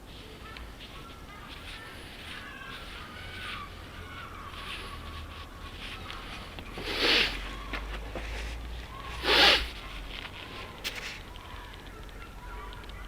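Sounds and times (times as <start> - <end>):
crow cawing: 0.4 - 7.8, 11.3 - 13.0.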